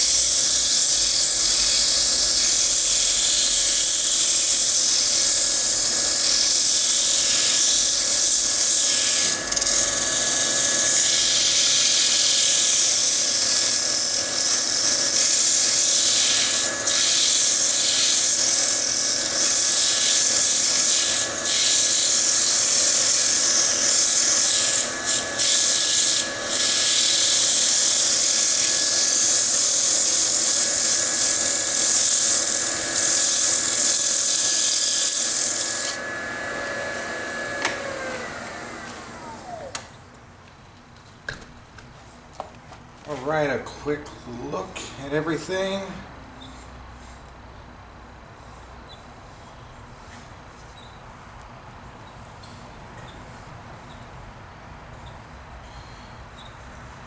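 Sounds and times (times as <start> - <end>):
sandpaper rubbing spinning wood: 0.0 - 39.2
lathe motor hum: 0.2 - 40.0.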